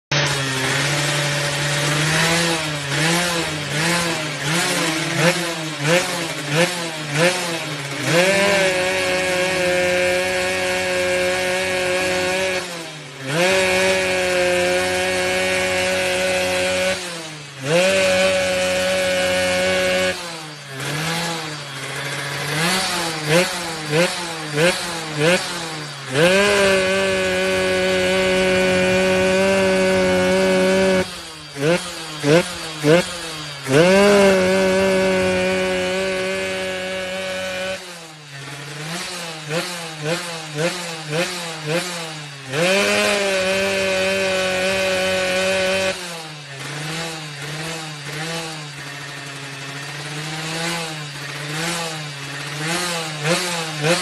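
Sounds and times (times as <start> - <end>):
two-stroke engine revving: 0.0 - 54.0
raspy exhaust note: 0.1 - 46.0.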